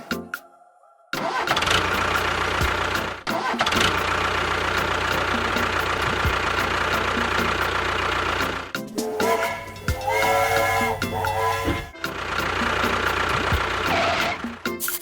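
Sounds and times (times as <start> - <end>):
engine starting and running: 1.2 - 14.9.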